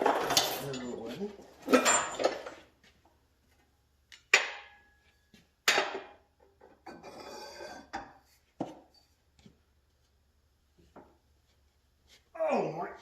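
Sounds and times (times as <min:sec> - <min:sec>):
metal parts rattling: 0:00.0 - 0:02.6
metal tools clanking: 0:00.0 - 0:02.6.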